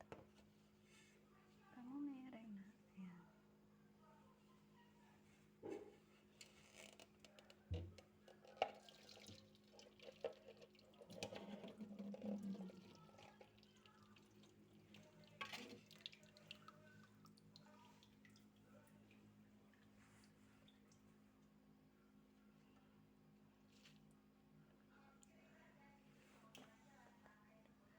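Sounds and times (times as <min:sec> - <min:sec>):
running water: 0:08.5 - 0:21.0.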